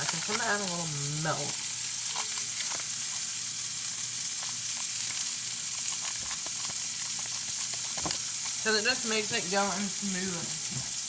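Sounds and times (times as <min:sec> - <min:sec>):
patties sizzling in a pan: 0:00.0 - 0:11.0.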